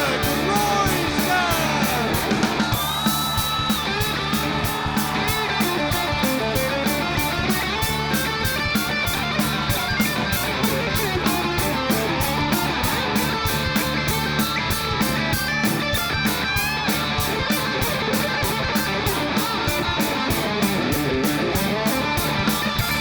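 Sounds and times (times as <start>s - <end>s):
drum beat: 0.0s - 23.0s
electric guitar: 0.0s - 23.0s.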